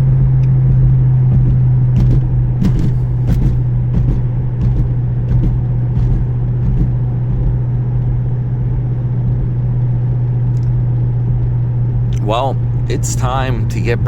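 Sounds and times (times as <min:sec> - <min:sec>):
car engine and road noise: 0:00.0 - 0:14.0.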